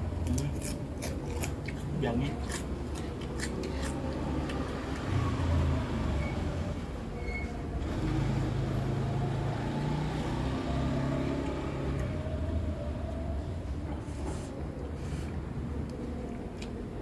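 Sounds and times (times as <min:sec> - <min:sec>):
low engine hum: 0:04.1 - 0:17.0.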